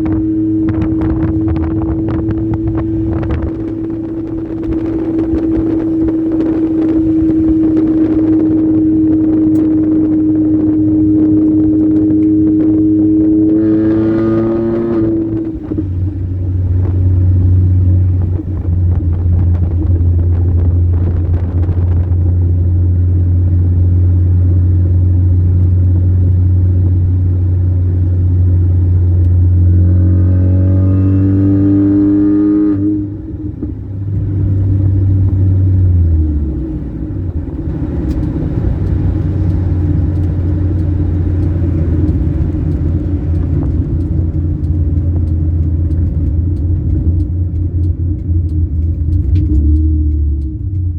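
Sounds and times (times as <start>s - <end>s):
car engine droning and revving: 0.0s - 50.9s.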